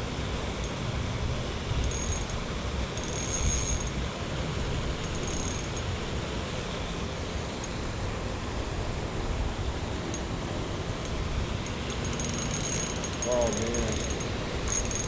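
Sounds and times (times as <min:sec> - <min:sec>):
fishing reel drag buzzing: 0:01.8 - 0:02.4, 0:03.0 - 0:04.0, 0:05.0 - 0:05.8, 0:11.0 - 0:15.0.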